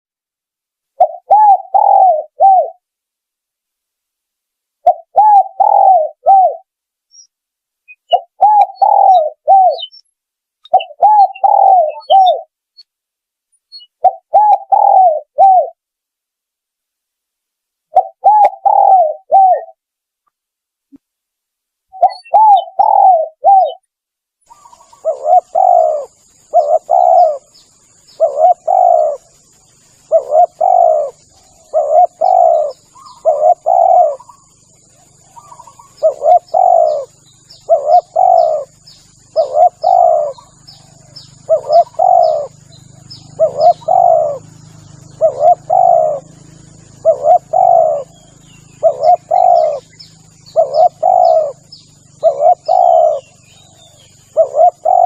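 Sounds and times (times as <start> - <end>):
dove cooing: 1.0 - 2.8, 4.8 - 6.7, 8.1 - 10.0, 10.6 - 12.5, 13.8 - 15.8, 17.9 - 19.8, 21.9 - 23.8, 24.5 - 55.0
faint high chirps: 4.8 - 12.9, 13.5 - 15.8, 21.9 - 55.0.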